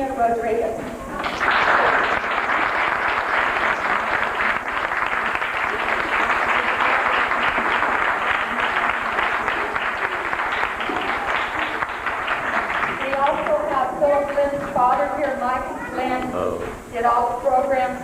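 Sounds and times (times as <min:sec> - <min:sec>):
audience applauding: 0:01.2 - 0:14.4.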